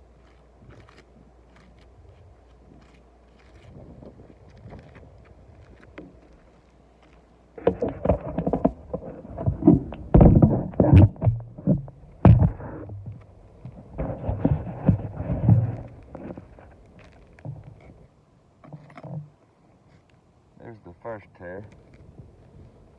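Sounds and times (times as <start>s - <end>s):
roof shingles crackling and scraping: 0.0s - 18.1s
sharp knocks: 7.6s - 16.5s.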